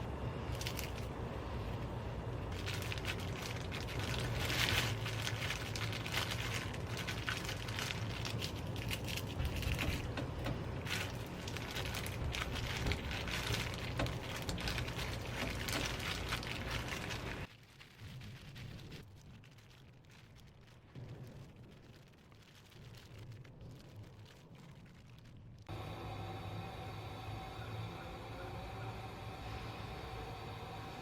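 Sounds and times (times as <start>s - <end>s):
steady low hum: 0.0s - 17.5s, 25.7s - 31.0s
dense irregular crackling: 0.0s - 31.0s.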